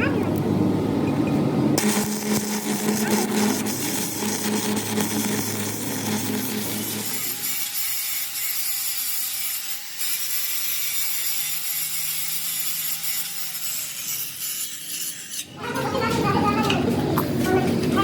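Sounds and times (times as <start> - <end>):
low machine hum: 0.0 - 7.4
machine whine: 1.2 - 8.1
workshop machinery rattling: 1.8 - 8.1.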